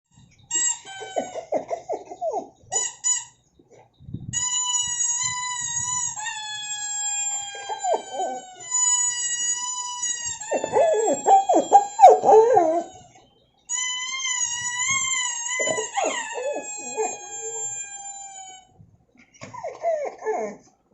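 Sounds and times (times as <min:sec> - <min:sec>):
high-pitched squeaky tone: 0:00.2 - 0:03.4, 0:04.3 - 0:18.8
puppy whining and yelping: 0:00.8 - 0:02.8, 0:06.0 - 0:13.2, 0:14.0 - 0:18.6, 0:19.4 - 0:20.7.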